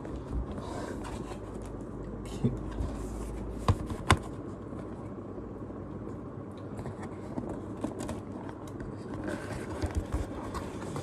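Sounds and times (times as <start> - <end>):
low background hum: 0.0 - 11.0
cardboard box rustling and tapping: 2.8 - 4.4, 9.1 - 11.0.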